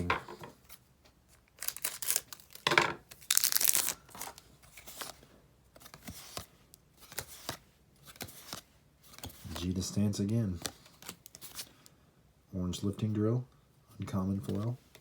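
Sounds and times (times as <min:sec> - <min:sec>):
wrapper being torn open: 0:01.6 - 0:04.4.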